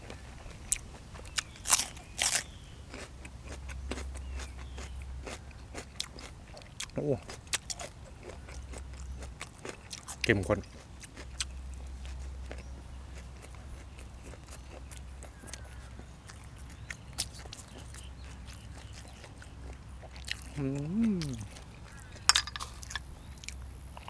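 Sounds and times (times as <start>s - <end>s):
chewing and crunching: 0.0s - 24.0s
steady low hum: 0.0s - 24.0s
person humming: 20.5s - 21.6s.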